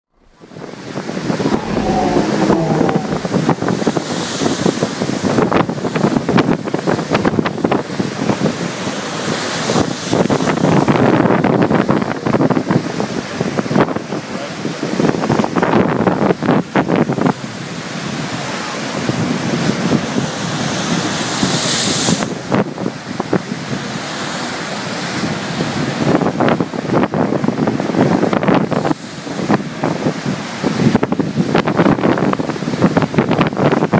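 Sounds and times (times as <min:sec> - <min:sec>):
storm waves breaking: 0:00.1 - 0:04.2
wind buffeting microphone: 0:00.1 - 0:04.4.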